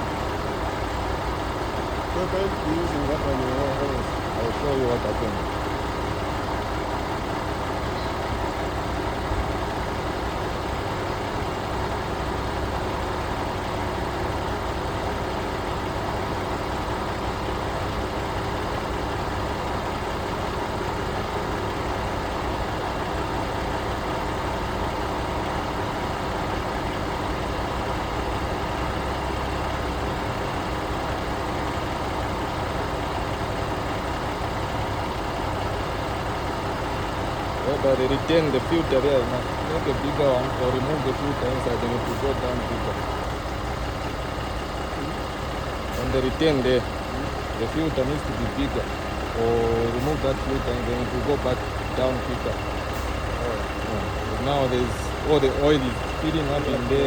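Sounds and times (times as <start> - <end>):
diesel truck engine idling: 0.0 - 57.0.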